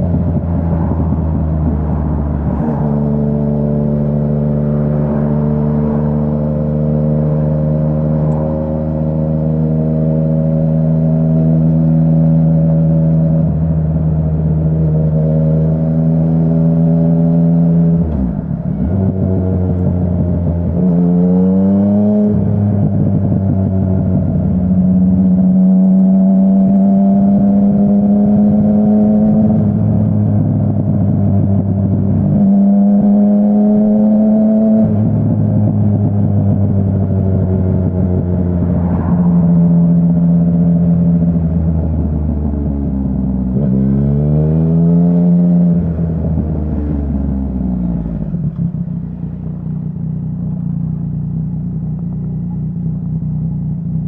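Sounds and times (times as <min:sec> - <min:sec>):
motorcycle engine running: 0:45.2 - 0:54.0.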